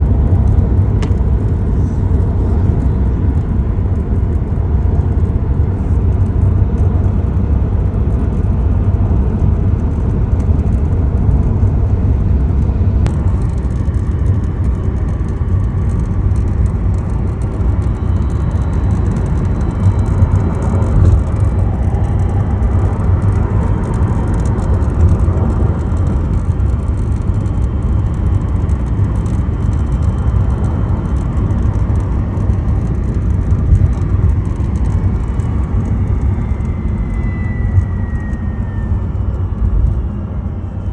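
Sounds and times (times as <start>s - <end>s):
road and tyre rumble: 0.0s - 40.9s.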